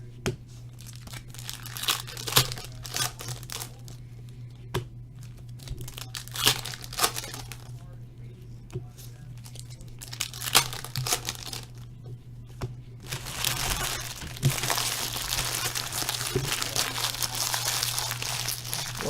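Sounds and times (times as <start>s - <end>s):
foil wrappers crinkling: 0.7s - 4.1s, 5.2s - 7.8s, 9.0s - 11.9s, 13.0s - 19.0s.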